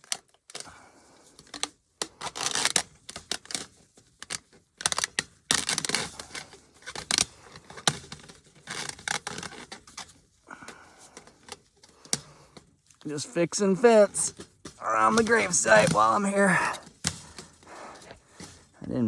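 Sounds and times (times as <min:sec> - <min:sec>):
fence wire scraping and rattling: 0:13.1 - 0:18.7.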